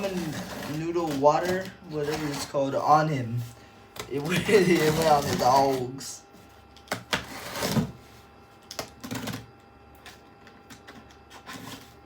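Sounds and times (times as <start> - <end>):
cardboard scraping and rustling: 0.0 - 8.3, 11.2 - 12.0.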